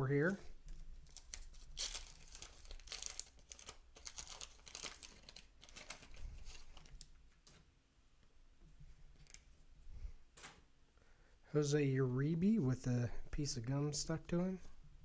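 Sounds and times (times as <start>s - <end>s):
wax paper wrapper crinkling: 0.6s - 7.6s.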